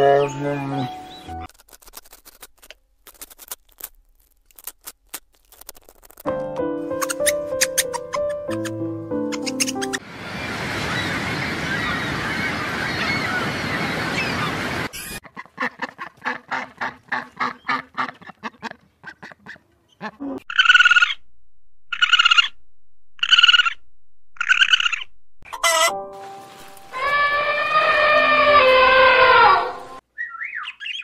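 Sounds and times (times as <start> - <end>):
waterfowl flock calling: 7.0 - 10.0.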